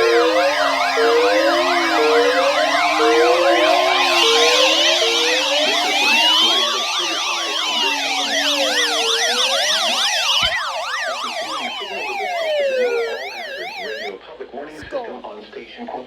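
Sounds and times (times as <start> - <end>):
fast yelping sirens: 0.0 - 14.1
siren wail: 0.0 - 14.1.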